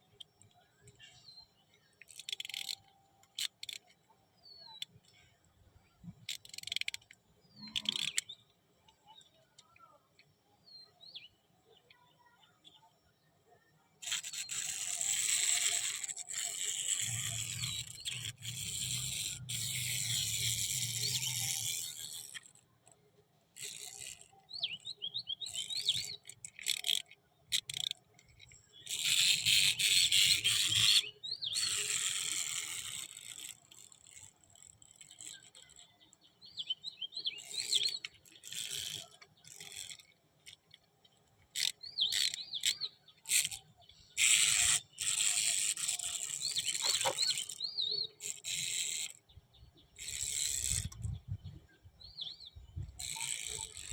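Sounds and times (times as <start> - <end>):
small rattles: 0.0 - 4.1, 4.8 - 8.3, 14.0 - 51.6, 52.8 - 53.9
faint bird chirps: 0.1 - 22.0, 34.9 - 53.9.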